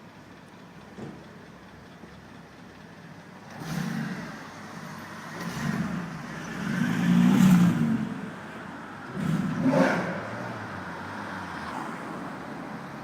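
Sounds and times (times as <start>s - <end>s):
sports car engine revving: 3.5s - 8.3s, 9.1s - 10.8s.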